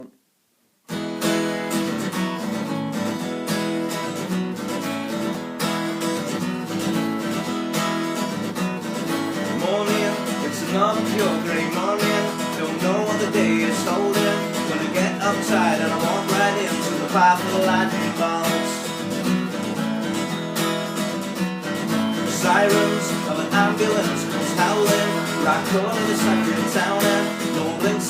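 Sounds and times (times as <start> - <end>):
acoustic guitar strumming: 0.9 - 28.0.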